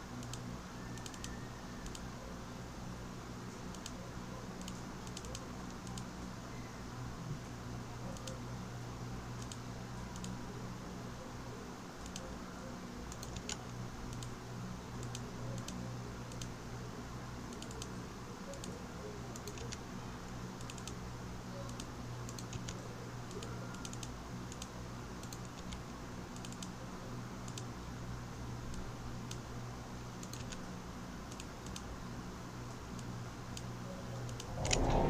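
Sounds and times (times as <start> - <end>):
low electrical hum: 0.0 - 35.0
keyboard typing: 4.6 - 6.1, 13.1 - 14.3, 19.3 - 19.8, 21.7 - 25.8, 30.2 - 30.6.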